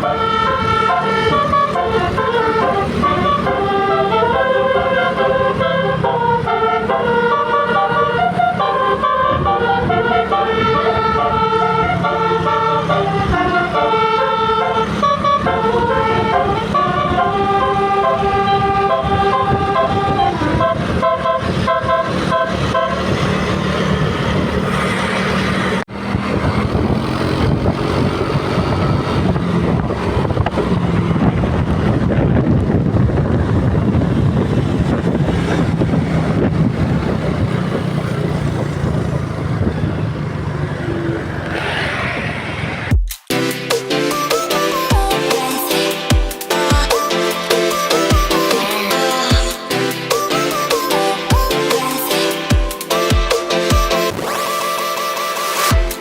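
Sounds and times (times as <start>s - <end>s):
musical air horn melody: 0.0s - 25.0s, 43.3s - 56.0s
bus engine and road noise: 0.0s - 56.0s.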